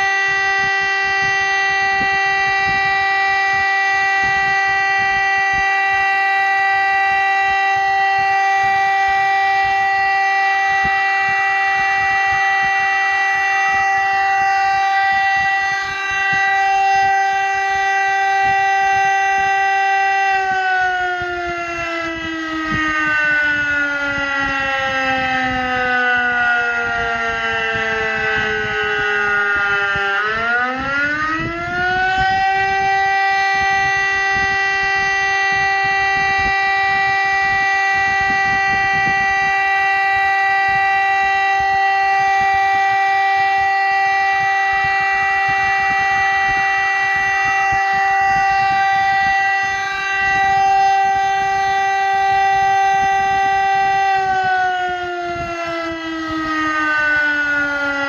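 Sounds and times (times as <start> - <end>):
siren steady tone: 0.0 - 58.0.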